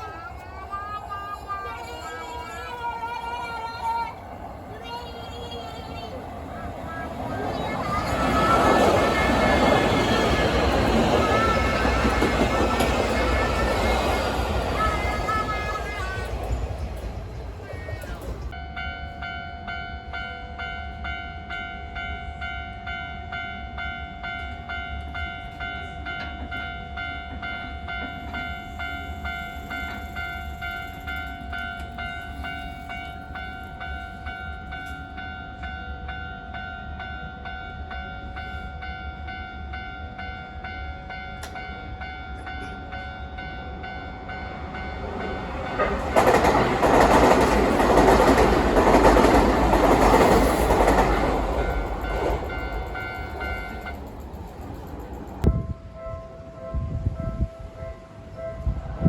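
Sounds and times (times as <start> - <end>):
train passing: 0.0 - 59.0
level crossing alarm bell: 18.5 - 55.5.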